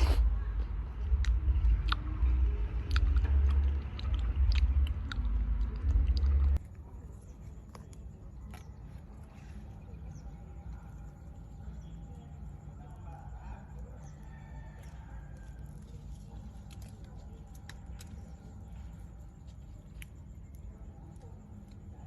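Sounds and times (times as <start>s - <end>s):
low rumble: 0.0s - 6.7s.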